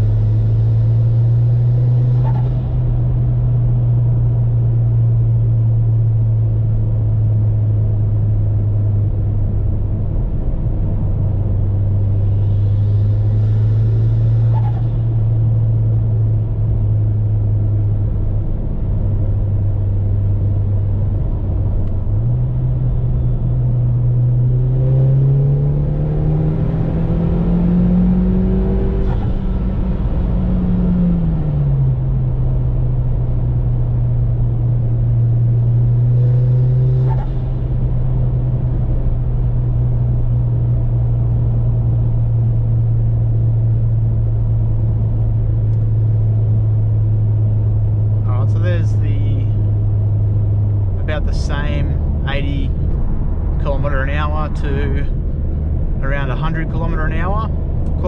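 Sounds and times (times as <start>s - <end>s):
car engine accelerating: 0.0s - 58.0s.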